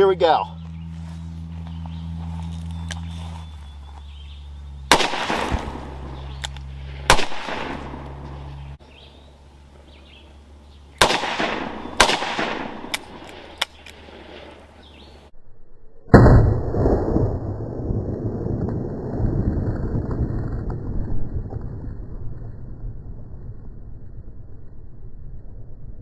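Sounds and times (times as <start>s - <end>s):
revolver gunshots: 4.8s - 8.6s, 11.0s - 14.8s.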